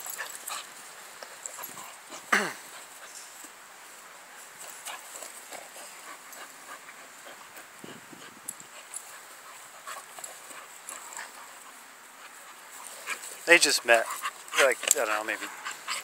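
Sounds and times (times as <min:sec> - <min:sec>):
dogs scuffling: 0:00.0 - 0:16.0
low dog sound: 0:04.7 - 0:16.0.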